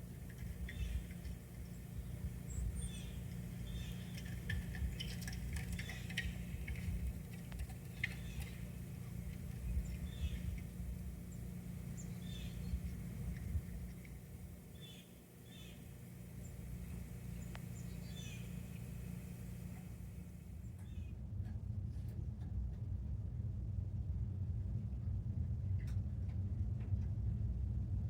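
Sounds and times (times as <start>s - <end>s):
light ticking and clicking: 0.0s - 14.6s, 16.2s - 20.0s
small birds chirping: 0.0s - 21.1s
steady low rumble: 0.0s - 28.0s.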